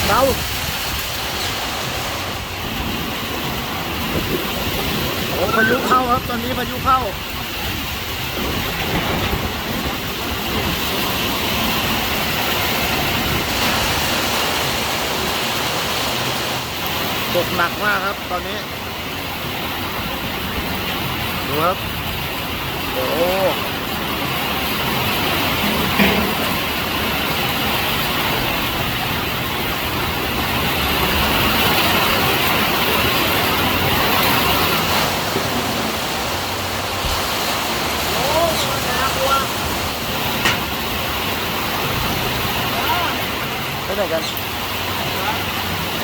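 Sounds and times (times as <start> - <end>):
strong wind: 0.0 - 17.4, 18.2 - 46.0
heavy rain pouring: 0.0 - 46.0.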